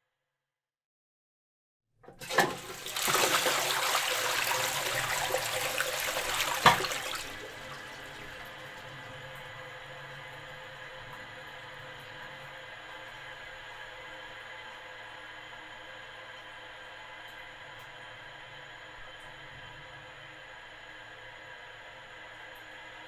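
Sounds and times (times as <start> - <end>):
toilet flush water rushing: 2.1 - 8.9.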